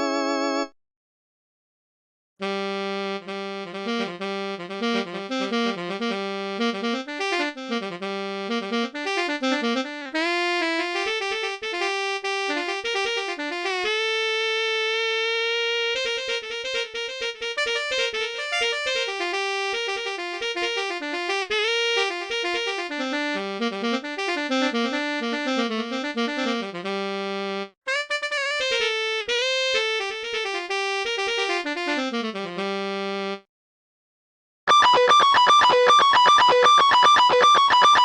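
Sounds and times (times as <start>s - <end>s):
electronic keyboard music: 15.7s - 33.4s, 34.7s - 38.0s.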